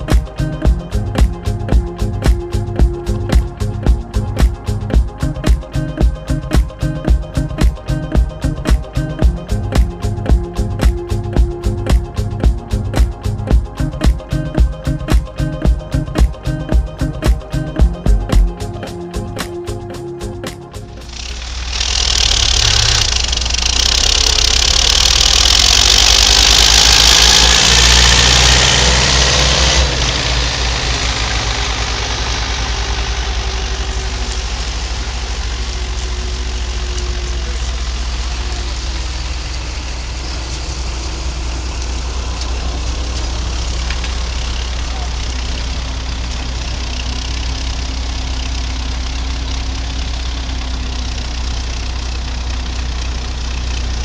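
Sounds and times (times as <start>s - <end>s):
diesel engine droning: 0.0s - 54.0s
loud hiss: 21.0s - 43.6s.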